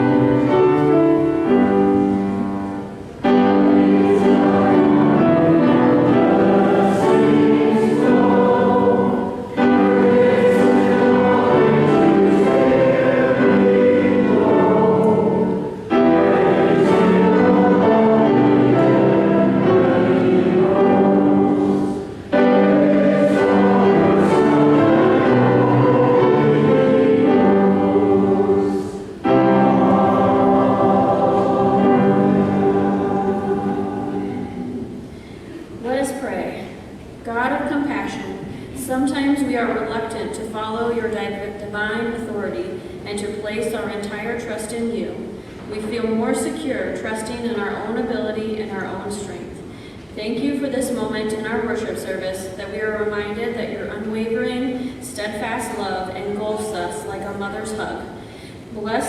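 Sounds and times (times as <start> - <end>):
church choir singing: 0.0 - 35.7.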